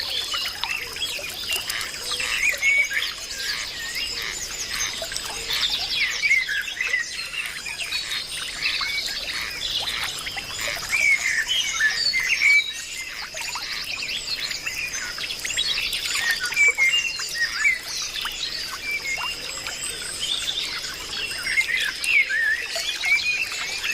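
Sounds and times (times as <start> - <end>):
birds chirping and whistling: 0.0 - 23.9.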